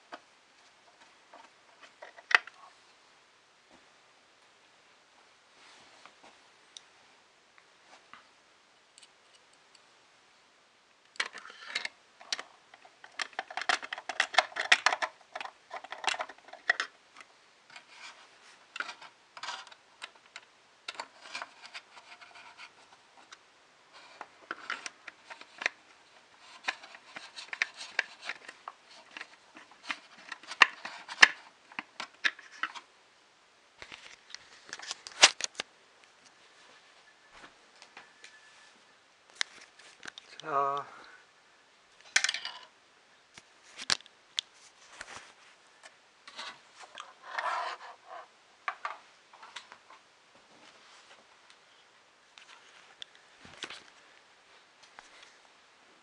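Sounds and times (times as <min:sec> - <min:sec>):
plastic and metal parts clicking: 0:11.2 - 0:16.9.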